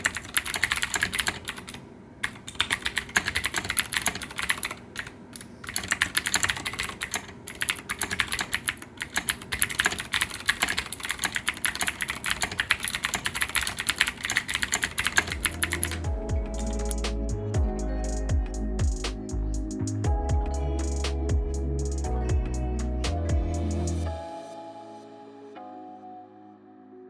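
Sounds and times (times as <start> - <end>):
music with heavy bass: 15.4 - 24.1.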